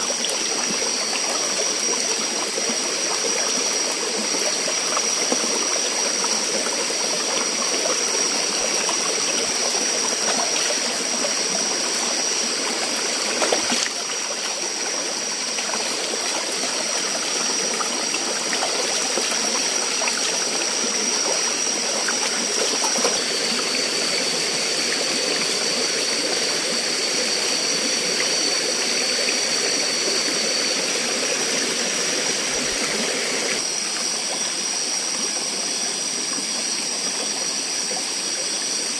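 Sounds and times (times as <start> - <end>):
flowing water rushing: 0.0 - 38.9
high-pitched whine: 0.0 - 38.9.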